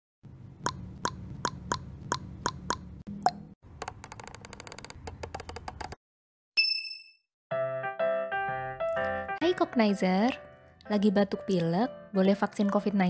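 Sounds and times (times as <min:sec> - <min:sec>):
wood-block ticks: 0:00.6 - 0:06.0.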